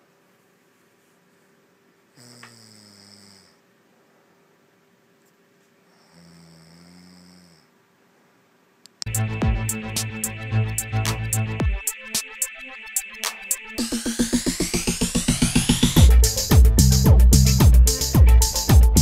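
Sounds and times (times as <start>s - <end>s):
quiet breathing: 0.8s - 4.5s, 5.6s - 8.5s
woman snoring: 2.1s - 3.6s, 5.9s - 7.8s
loud electronic music: 9.1s - 19.0s.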